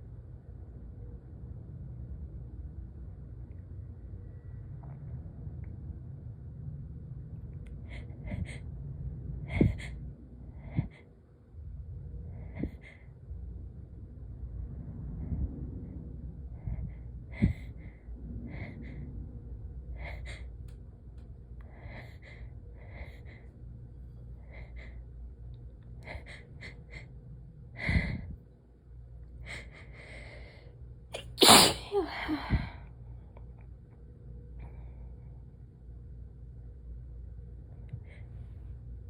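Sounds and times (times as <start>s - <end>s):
woman breathing quickly: 7.7s - 11.3s, 12.2s - 13.4s, 16.4s - 20.7s, 21.6s - 28.4s, 29.4s - 30.8s, 31.8s - 33.0s
woman sneezing: 31.2s - 32.4s.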